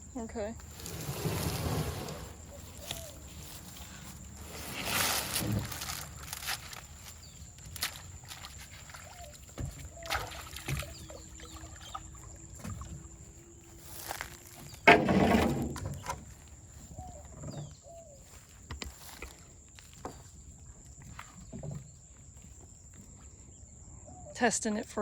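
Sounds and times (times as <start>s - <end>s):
knocks and bumps of boat: 0.4s - 18.0s, 21.0s - 22.6s.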